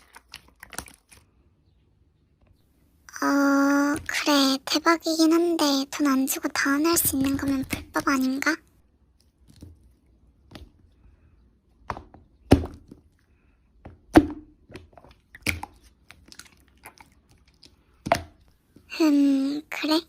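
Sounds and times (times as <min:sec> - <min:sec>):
slime squelching with sticky pops: 0:14.0 - 0:18.5.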